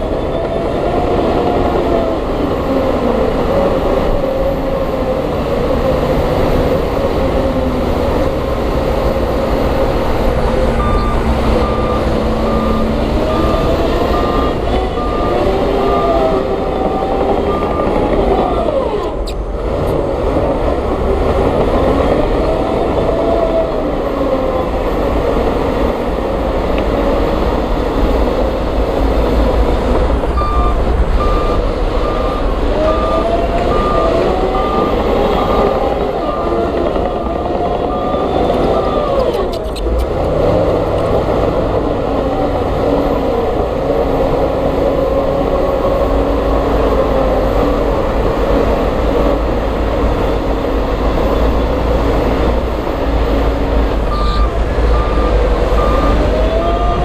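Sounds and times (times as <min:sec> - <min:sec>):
heavy machinery diesel engines revving: 0:00.0 - 0:57.0
reversing alarm beeping: 0:10.6 - 0:19.4, 0:30.4 - 0:39.8, 0:54.1 - 0:57.0.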